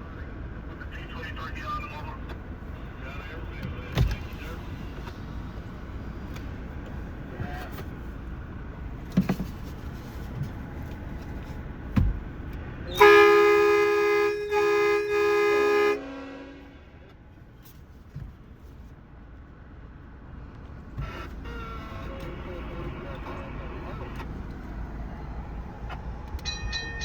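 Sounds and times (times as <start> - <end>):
horn chord blasts: 13.0 - 16.9.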